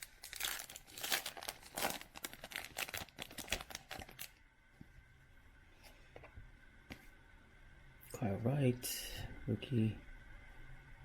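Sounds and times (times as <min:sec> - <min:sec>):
wrapper tearing and crinkling: 0:00.0 - 0:04.4.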